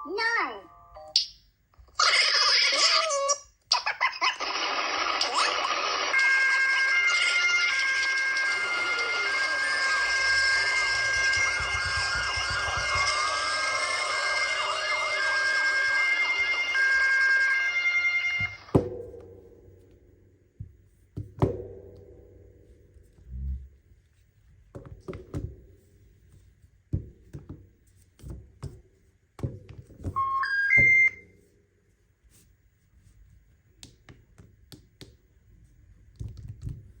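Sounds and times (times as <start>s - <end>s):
rising electronic chime: 6.2s - 18.7s
knocks and taps on smartphone: 10.8s - 13.3s.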